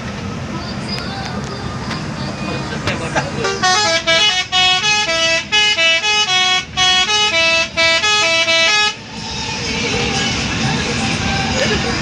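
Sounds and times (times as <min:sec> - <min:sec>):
musical air horn tune: 0:03.5 - 0:09.0.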